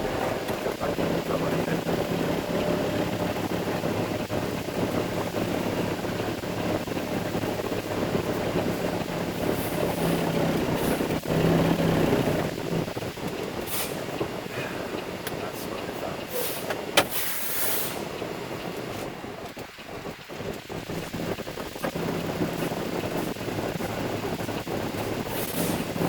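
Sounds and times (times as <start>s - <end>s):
truck diesel engine running: 0.0s - 26.0s
brief hiss: 16.4s - 18.0s.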